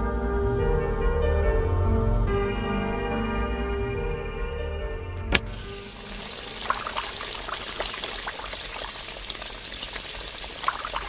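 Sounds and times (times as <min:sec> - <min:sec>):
sharp click: 0:05.2 - 0:05.7
splashing water rushing: 0:05.4 - 0:11.0.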